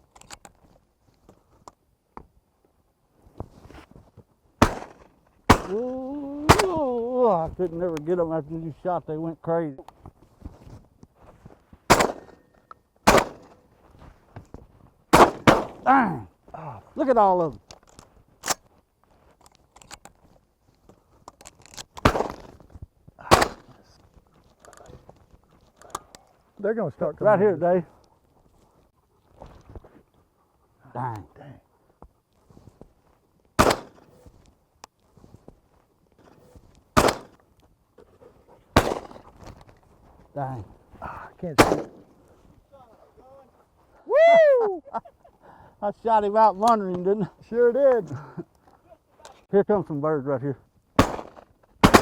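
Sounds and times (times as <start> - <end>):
shotgun shots: 4.6 - 5.8, 6.4 - 6.8, 11.9 - 12.4, 13.0 - 13.6, 15.1 - 15.9, 22.0 - 22.5, 23.2 - 23.7, 33.6 - 34.1, 37.0 - 37.4, 38.8 - 39.2, 41.6 - 42.1, 51.0 - 52.0
man's drawn-out ooh: 5.7 - 7.2, 44.1 - 44.9.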